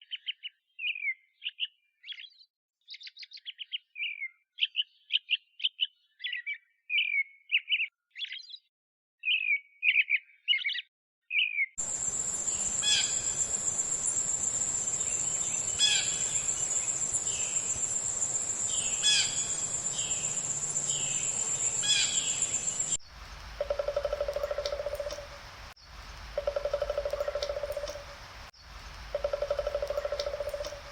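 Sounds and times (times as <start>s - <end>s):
bird call: 11.8s - 30.9s
songbird warbling: 11.8s - 30.9s.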